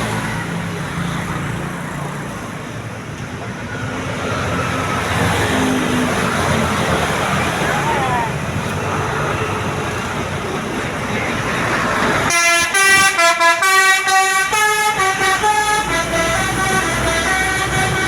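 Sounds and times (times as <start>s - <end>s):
road and engine noise: 0.0s - 18.0s
bus horn melody: 12.2s - 18.0s.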